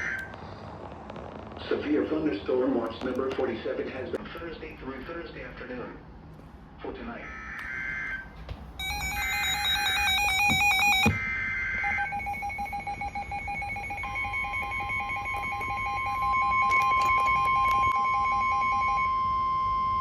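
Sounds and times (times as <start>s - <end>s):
steady warning tone: 7.2s - 20.0s
stepped electronic alarm: 7.4s - 20.0s
rapid pulsing beep: 11.8s - 20.0s.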